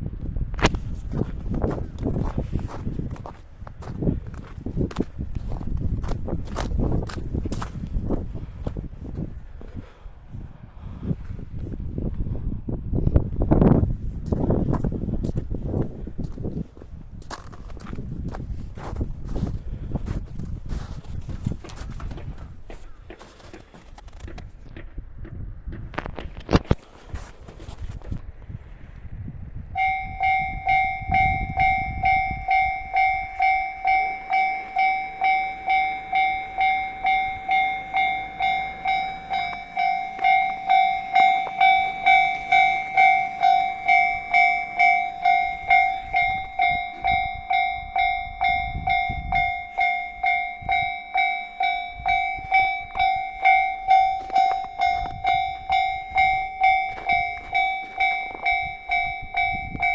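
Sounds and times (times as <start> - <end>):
level crossing warning bell: 29.7 - 59.9.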